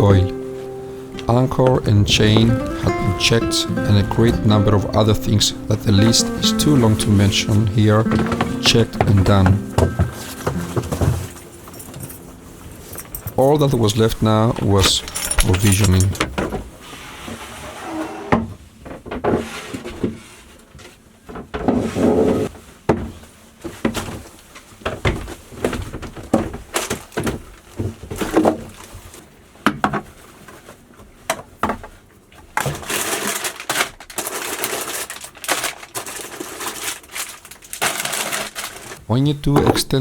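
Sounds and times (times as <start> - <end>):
knocks and clinks of containers: 14.8 - 16.5
rustling of packages: 32.6 - 39.0.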